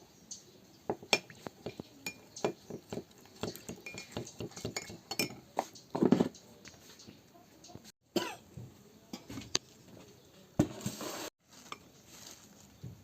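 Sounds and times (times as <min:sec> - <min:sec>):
utensil clinking against glass: 0:03.4 - 0:05.4.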